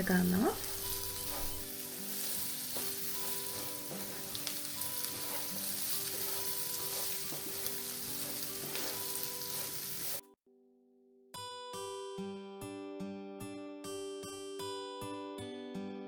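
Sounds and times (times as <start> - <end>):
food sizzling in oil: 0.0 - 10.2
spoon scraping a pan: 0.6 - 10.2.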